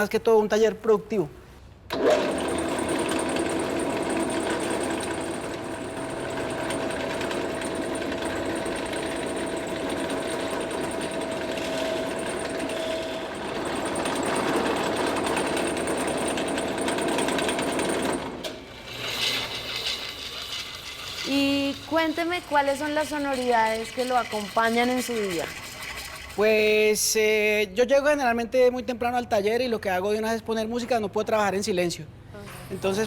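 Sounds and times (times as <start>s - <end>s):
woodworking machine whining: 1.9s - 27.0s.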